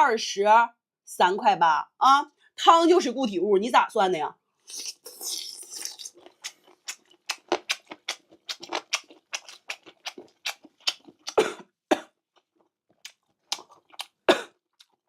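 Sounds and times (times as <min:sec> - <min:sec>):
wet chewing and lip-smacking: 0:04.7 - 0:11.4, 0:12.3 - 0:15.0.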